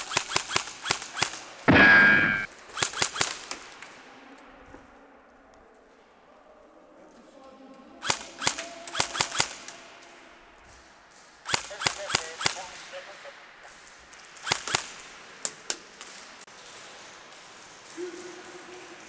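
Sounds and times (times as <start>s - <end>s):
airsoft guns firing: 0.0s - 4.0s, 8.0s - 10.2s, 11.1s - 16.9s.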